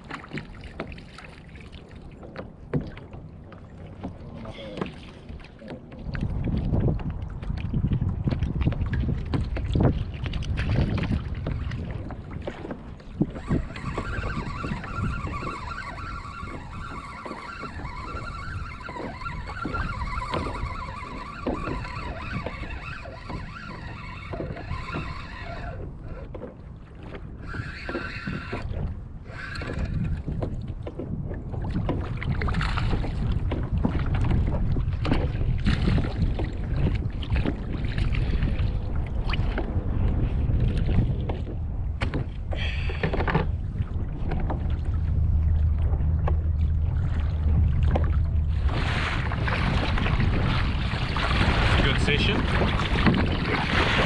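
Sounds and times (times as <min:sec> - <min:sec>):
water slapping against kayak: 0:00.0 - 0:54.0
wind buffeting microphone: 0:00.0 - 0:54.0
whirring whine: 0:13.2 - 0:26.2.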